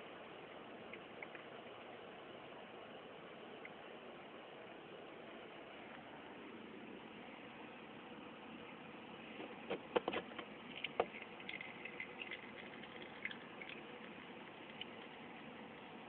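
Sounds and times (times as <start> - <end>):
steady background hiss: 0.0 - 16.0
sharp clicks and light knocks: 9.4 - 12.4.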